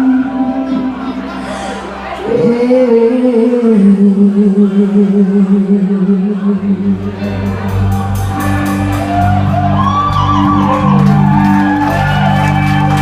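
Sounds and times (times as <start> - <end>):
live rock band playing: 6.8 - 13.0
audience shouting and whooping: 8.4 - 13.0.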